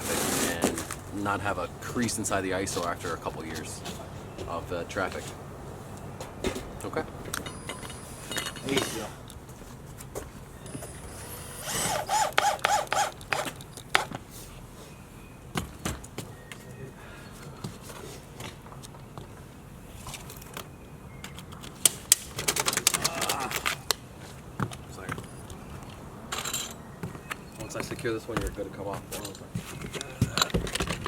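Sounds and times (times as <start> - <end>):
knocks and clicks: 6.1 - 8.8
cordless drill whirring: 10.7 - 13.6.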